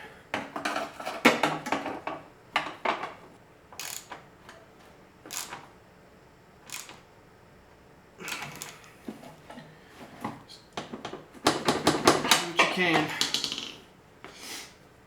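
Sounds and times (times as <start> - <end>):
metal hardware clicking: 3.8 - 4.2, 5.3 - 5.6, 6.7 - 7.0, 8.3 - 8.9.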